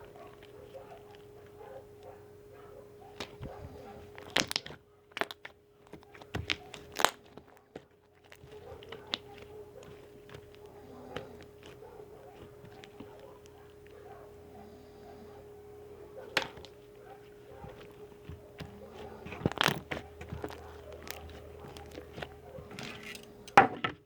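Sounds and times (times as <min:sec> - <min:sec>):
faint steady hum: 0:00.0 - 0:24.0
slime being squished by hand: 0:03.2 - 0:13.5, 0:17.4 - 0:22.7
slime popping and clicking: 0:04.2 - 0:07.3.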